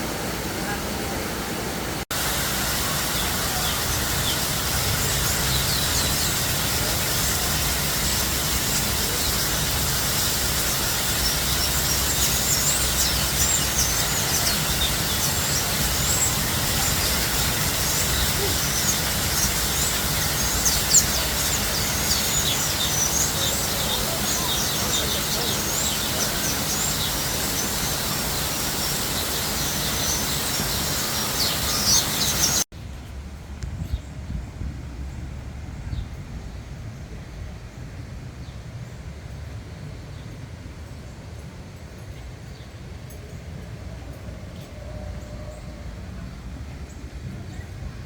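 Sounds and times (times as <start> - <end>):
steady rushing noise: 0.0 - 36.4
small birds chirping: 2.1 - 32.7.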